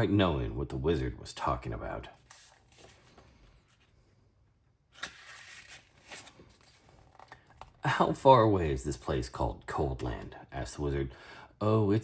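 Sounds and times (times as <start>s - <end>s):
book page turning: 2.1s - 4.0s, 4.9s - 7.8s.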